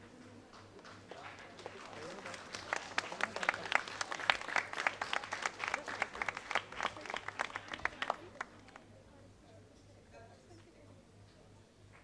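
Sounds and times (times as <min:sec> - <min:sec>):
audience applauding: 0:00.0 - 0:08.9.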